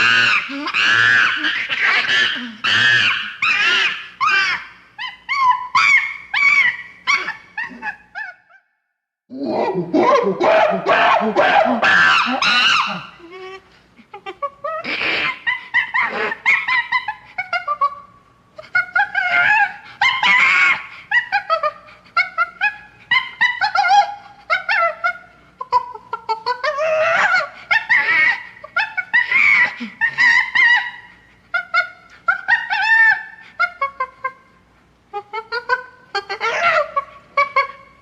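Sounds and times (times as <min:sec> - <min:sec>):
chimpanzee calling: 0:00.0 - 0:08.6, 0:09.3 - 0:38.0.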